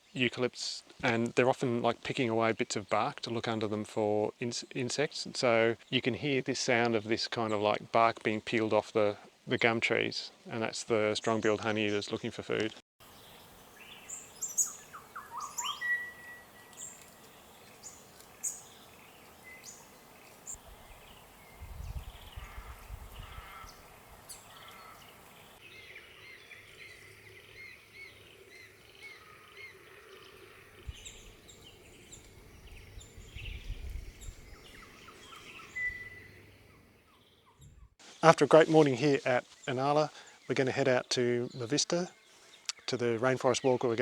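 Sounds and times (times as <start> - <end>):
birds chirping: 0.0 - 44.0
low wind rumble: 20.6 - 24.6, 30.8 - 35.9.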